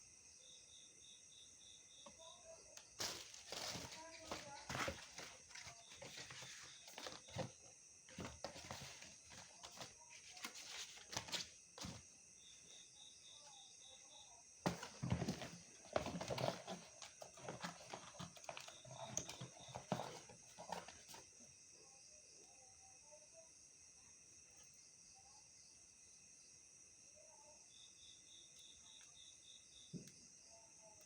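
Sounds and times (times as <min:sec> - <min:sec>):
objects being handled: 0:02.8 - 0:12.1, 0:14.6 - 0:21.4
insect chirring: 0:27.7 - 0:31.0.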